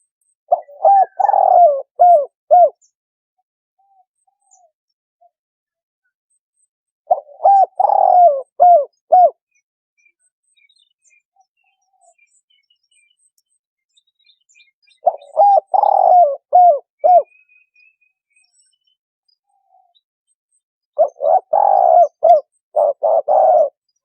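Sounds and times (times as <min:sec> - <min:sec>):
small birds chirping: 0:00.0 - 0:03.0, 0:03.8 - 0:24.0
dove cooing: 0:00.5 - 0:02.8, 0:07.1 - 0:09.4, 0:15.0 - 0:17.3, 0:21.0 - 0:23.9.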